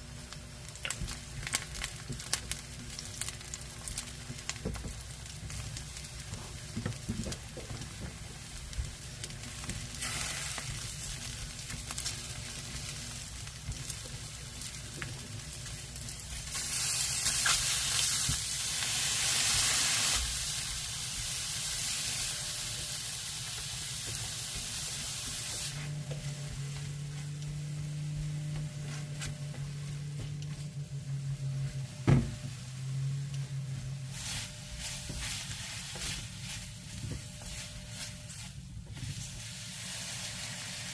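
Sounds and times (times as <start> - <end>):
low steady hum: 0.0 - 40.9
food sizzling in frying pan: 0.1 - 28.5, 31.7 - 40.9
stirring in pan: 32.5 - 40.9.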